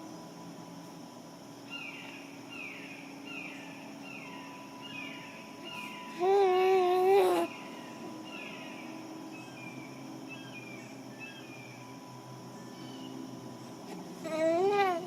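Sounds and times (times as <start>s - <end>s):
bird whistling calls: 1.7s - 6.2s
infant babbling: 6.2s - 7.5s, 13.9s - 15.0s.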